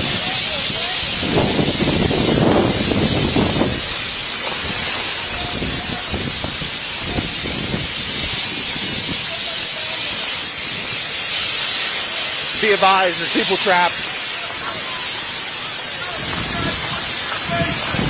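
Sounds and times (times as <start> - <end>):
loud steady hiss: 0.0 - 18.0.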